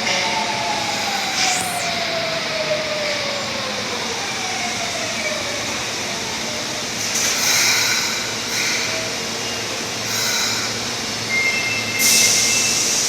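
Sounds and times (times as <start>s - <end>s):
subway train motor whine: 0.0s - 13.0s
train running over rails: 0.0s - 13.0s
burst of hiss: 10.0s - 11.0s.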